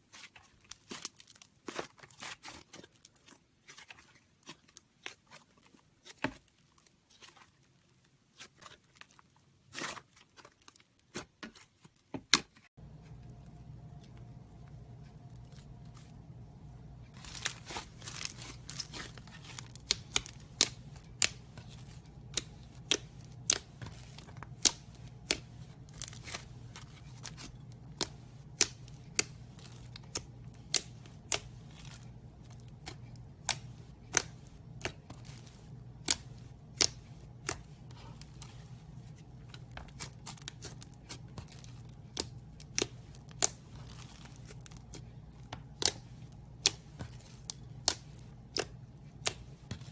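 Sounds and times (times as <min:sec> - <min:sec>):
faint low hum: 0:12.8 - 0:49.9.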